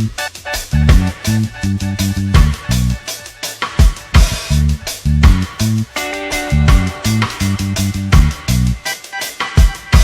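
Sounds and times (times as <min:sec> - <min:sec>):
upbeat music with drums bass guitar: 0:00.0 - 0:10.0.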